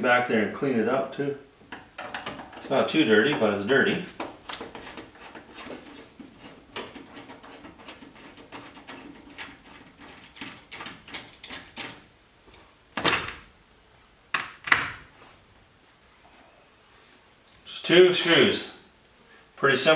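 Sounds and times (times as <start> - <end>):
tools clicking and tapping: 1.7 - 2.7, 4.1 - 12.0.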